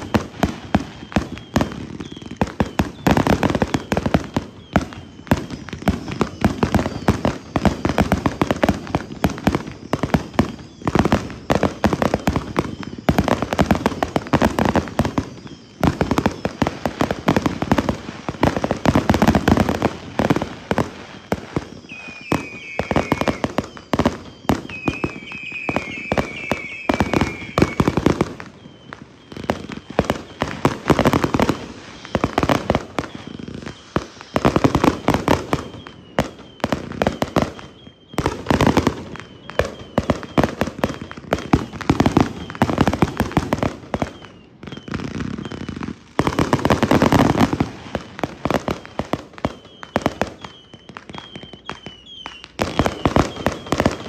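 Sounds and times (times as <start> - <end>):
fireworks bangs and crackles: 0.0 - 54.0
wavering high whistle: 15.2 - 16.6, 21.2 - 41.3, 49.5 - 54.0.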